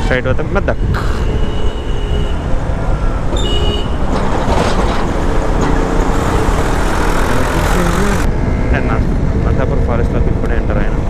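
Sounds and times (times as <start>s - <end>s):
motorcycle engine rumble: 0.4s - 8.3s
vehicle horn toot: 0.7s - 8.2s.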